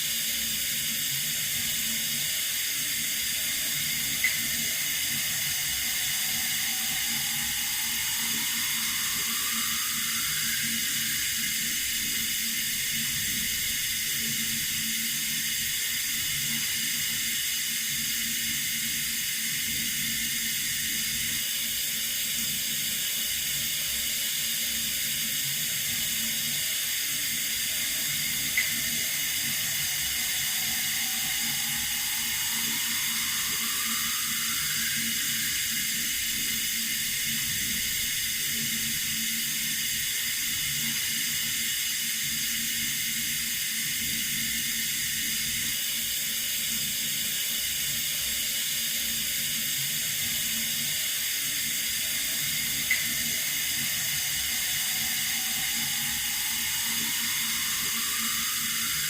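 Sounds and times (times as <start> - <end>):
tap water running: 0.9 - 21.2, 24.4 - 45.7, 50.7 - 59.0
faint rising tone: 3.0 - 14.4, 26.6 - 38.2, 52.0 - 59.0.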